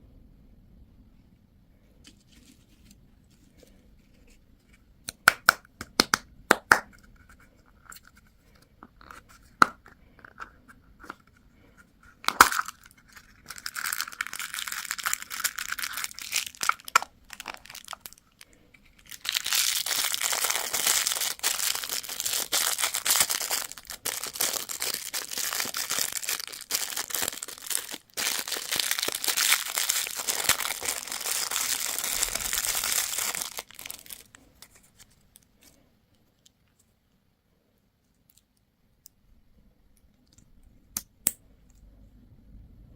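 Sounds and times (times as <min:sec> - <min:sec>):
candy wrappers crinkling and tearing: 0:12.1 - 0:36.7.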